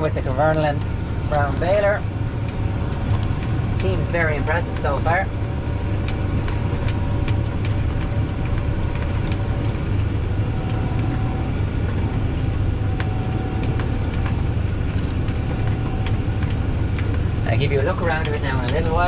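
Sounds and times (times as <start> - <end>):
faint machinery whine: 0.0 - 19.0
tractor engine drone: 0.0 - 19.0.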